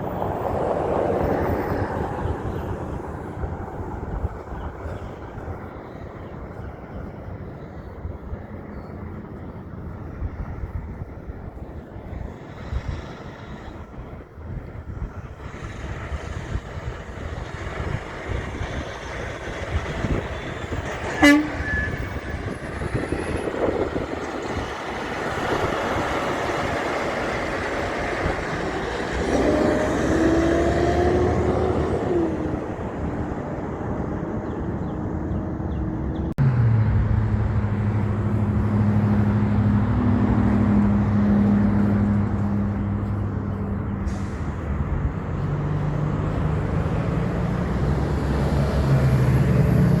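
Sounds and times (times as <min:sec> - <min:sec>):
truck engine rumble: 0:00.0 - 0:50.0
short horn blip: 0:21.0 - 0:22.4
two-tone horn blast: 0:21.0 - 0:22.6.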